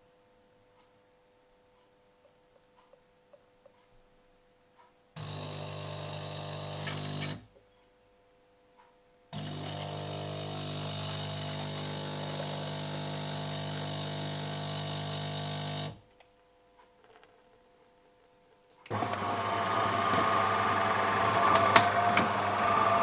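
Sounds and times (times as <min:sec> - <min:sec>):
coffee machine humming: 0:05.2 - 0:07.4, 0:09.4 - 0:16.0, 0:18.9 - 0:23.0.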